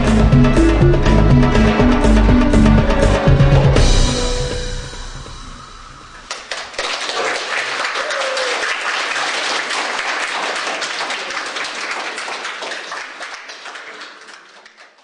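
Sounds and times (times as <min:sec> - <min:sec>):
audience applauding: 0:06.3 - 0:15.0.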